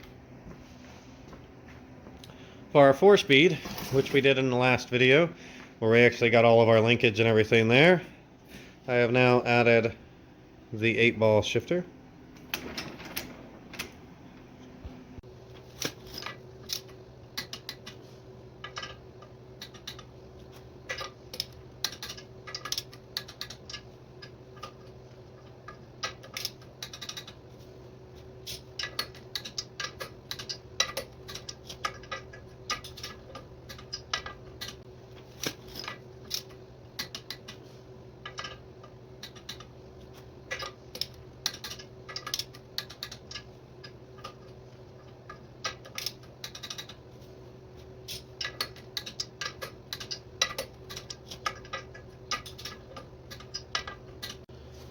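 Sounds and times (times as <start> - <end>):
steady low hum: 0.0 - 54.9
metal tools clinking and tapping: 18.6 - 19.0, 20.9 - 24.9, 28.8 - 34.8, 38.2 - 39.7, 40.5 - 47.0, 48.4 - 54.4.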